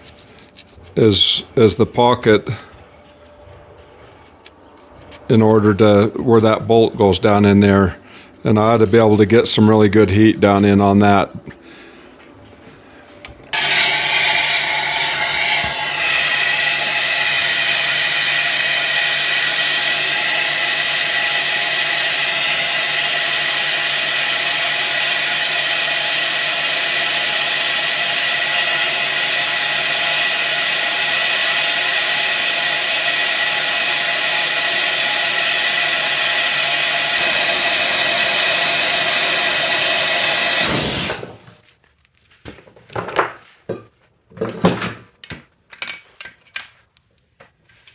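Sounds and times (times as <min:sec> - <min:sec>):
gas torch flame: 0:13.6 - 0:41.6.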